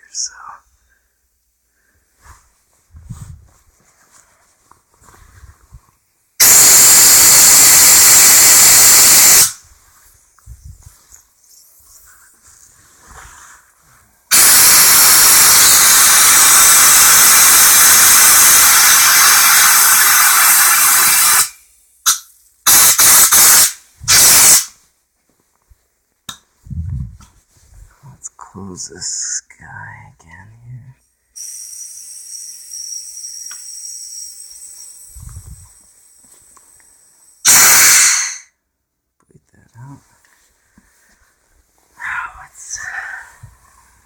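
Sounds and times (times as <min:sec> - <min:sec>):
compressed air hissing: 0:06.4 - 0:09.6, 0:14.3 - 0:24.8, 0:31.4 - 0:35.9, 0:37.4 - 0:38.5.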